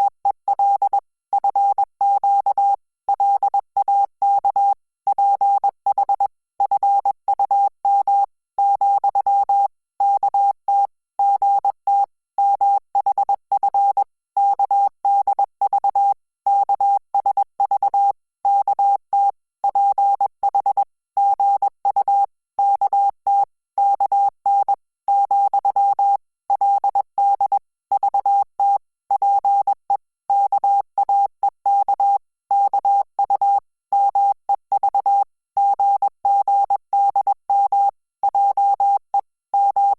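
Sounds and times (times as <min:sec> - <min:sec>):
morse code beeps: 0:00.5 - 0:39.9.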